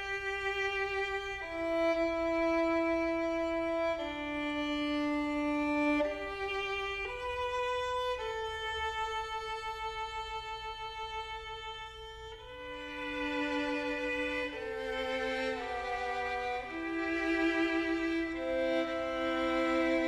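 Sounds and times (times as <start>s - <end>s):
slow violin melody: 0.0s - 20.0s.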